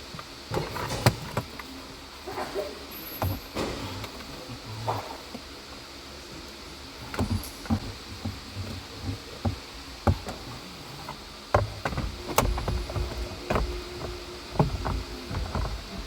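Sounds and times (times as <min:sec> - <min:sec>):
knocks and clicks of tools: 0:07.0 - 0:16.0.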